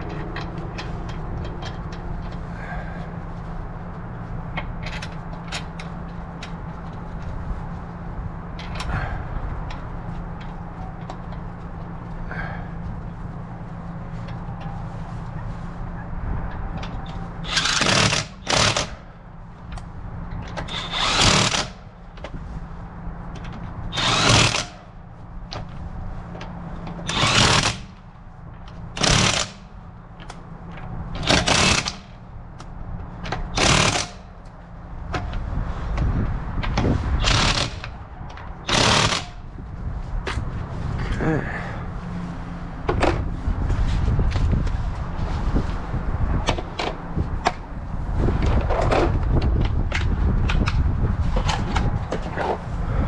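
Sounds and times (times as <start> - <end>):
steady low hum: 0.0 - 53.0
impact wrench hammering: 17.4 - 19.0, 20.4 - 21.9, 23.9 - 24.9, 26.9 - 28.0, 29.0 - 29.8, 31.1 - 32.2, 33.2 - 34.4, 38.6 - 39.5.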